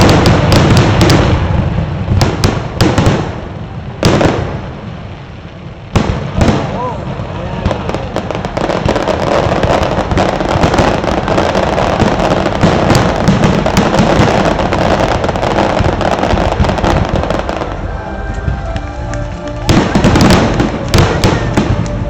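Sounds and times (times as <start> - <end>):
fireworks bursting and crackling: 0.0 - 22.0
music: 15.9 - 22.0.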